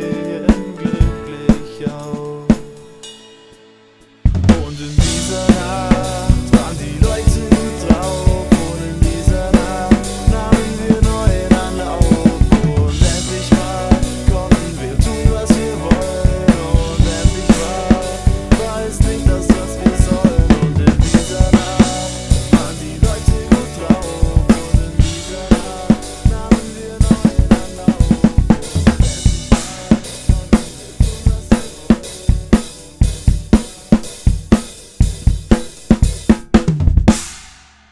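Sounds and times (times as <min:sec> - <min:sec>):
rock drum kit played hard: 0:00.0 - 0:37.9
bass and guitar: 0:04.3 - 0:34.3.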